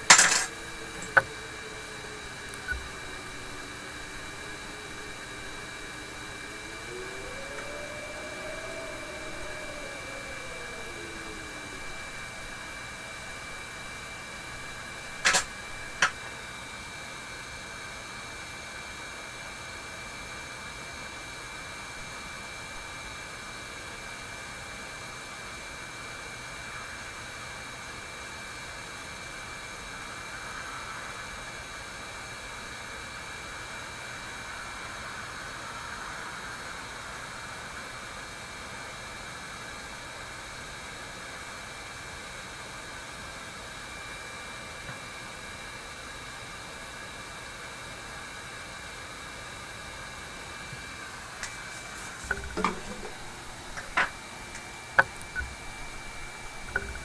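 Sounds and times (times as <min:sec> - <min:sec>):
small blower hissing: 0:00.0 - 0:16.3, 0:51.0 - 0:57.0
faint high whine: 0:00.0 - 0:16.4, 0:51.3 - 0:57.0
sharp clicks: 0:15.2 - 0:16.3.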